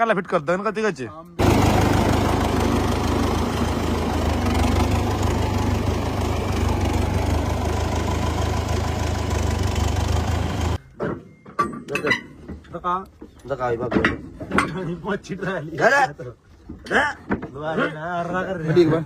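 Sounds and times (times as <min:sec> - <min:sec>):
tractor diesel engine running: 0:01.4 - 0:10.8.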